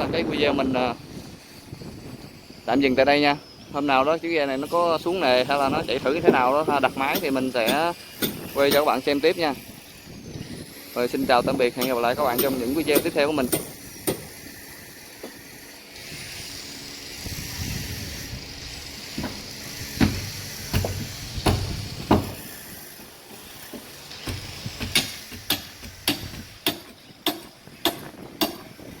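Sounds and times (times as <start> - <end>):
steady hiss: 0.0 - 26.9
sharp knocks: 11.8 - 14.3, 19.2 - 22.4.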